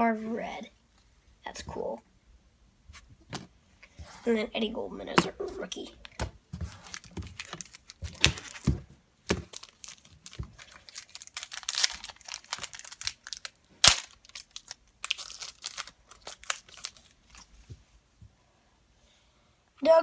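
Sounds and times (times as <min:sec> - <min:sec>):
cards shuffling: 0:06.1 - 0:14.6
foil pack crinkling: 0:06.6 - 0:17.6.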